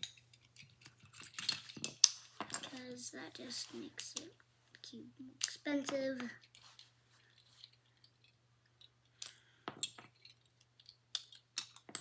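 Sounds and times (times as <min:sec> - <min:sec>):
plastic puzzle cube clicking: 0:00.1 - 0:02.8, 0:09.2 - 0:12.0.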